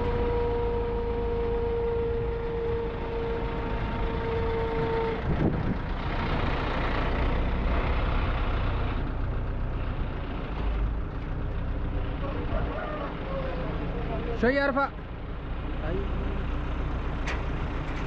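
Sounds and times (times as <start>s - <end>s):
truck engine running: 0.0s - 18.0s.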